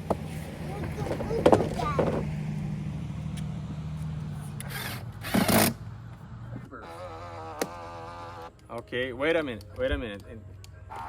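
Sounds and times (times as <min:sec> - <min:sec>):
small electric motor humming: 0:06.8 - 0:08.6.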